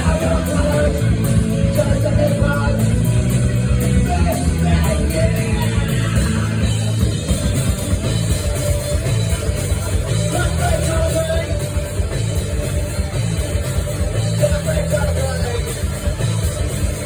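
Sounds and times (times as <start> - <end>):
person singing: 0.0 - 6.8, 9.7 - 12.0
bass guitar: 0.0 - 17.0
distorted electric guitars: 0.0 - 17.0
drums: 0.0 - 17.0.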